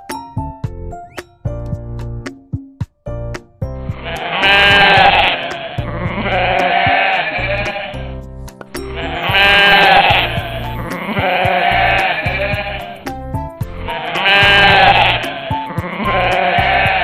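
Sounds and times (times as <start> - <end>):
background music: 0.0 - 17.0
sheep bleating: 6.2 - 8.0, 9.0 - 12.9, 13.9 - 17.0.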